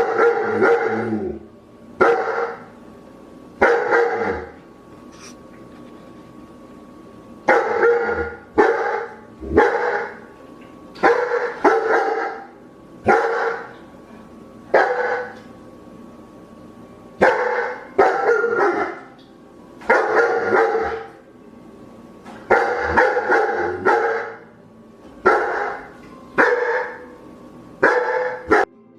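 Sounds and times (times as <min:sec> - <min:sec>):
dog barking: 0:00.0 - 0:01.1, 0:02.0 - 0:02.7, 0:03.6 - 0:04.5, 0:07.5 - 0:10.2, 0:11.0 - 0:12.5, 0:13.1 - 0:13.8, 0:14.7 - 0:15.4, 0:17.2 - 0:19.1, 0:19.9 - 0:21.1, 0:22.5 - 0:24.4, 0:25.2 - 0:27.0, 0:27.8 - 0:28.7.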